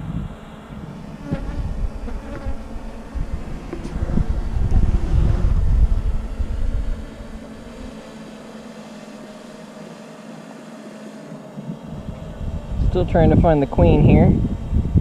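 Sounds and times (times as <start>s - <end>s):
honeybees buzzing: 0.0s - 15.0s
low rumble: 0.8s - 7.9s.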